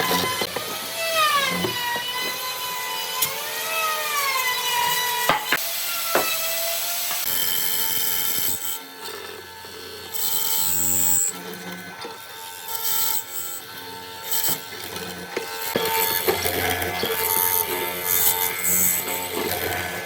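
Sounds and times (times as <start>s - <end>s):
power tool motor whine: 0.0s - 20.0s.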